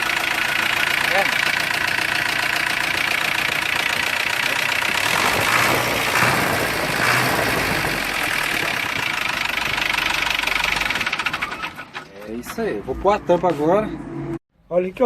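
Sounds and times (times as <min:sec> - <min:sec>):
diesel engine clattering at idle: 0:00.0 - 0:12.7.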